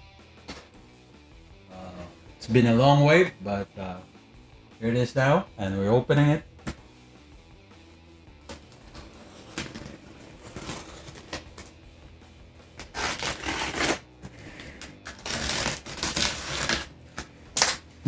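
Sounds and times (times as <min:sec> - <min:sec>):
cardboard box being opened: 0:08.6 - 0:11.7
packing rustling: 0:08.6 - 0:11.8.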